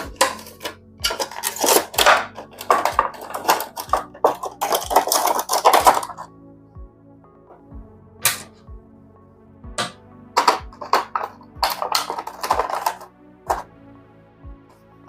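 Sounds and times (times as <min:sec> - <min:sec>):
packaging rustling and scraping: 0:00.0 - 0:06.3, 0:10.4 - 0:13.6.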